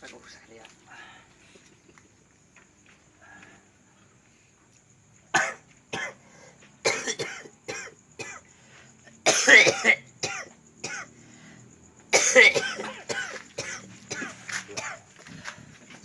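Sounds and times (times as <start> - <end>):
man coughing: 5.4 - 6.2, 6.9 - 8.4, 9.2 - 11.1, 12.2 - 15.0.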